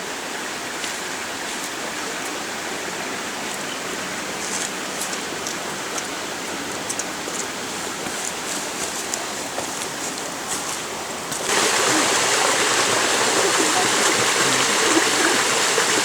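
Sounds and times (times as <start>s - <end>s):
creek water flowing: 0.1s - 16.0s.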